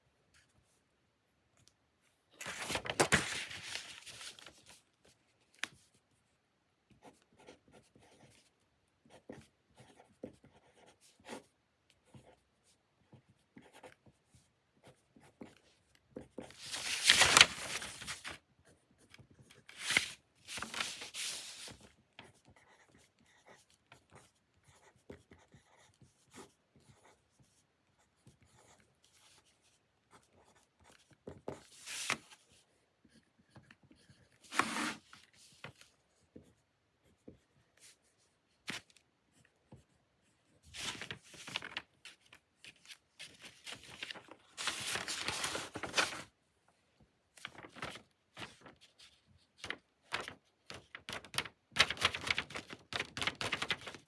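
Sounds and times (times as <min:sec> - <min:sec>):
pen scratching on paper: 0:09.1 - 0:12.4, 0:13.6 - 0:14.0, 0:22.4 - 0:27.2, 0:33.9 - 0:35.1.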